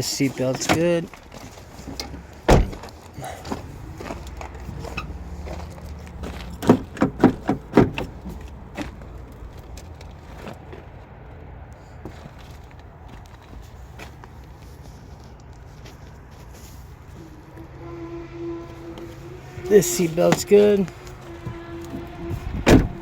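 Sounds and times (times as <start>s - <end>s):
seatbelt clicks and knocks: 6.6s - 8.2s.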